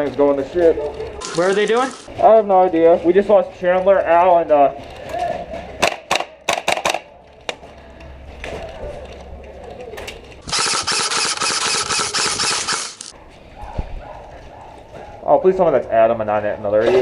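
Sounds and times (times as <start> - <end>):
airsoft gun full-auto burst: 1.2 - 2.1, 10.4 - 13.1.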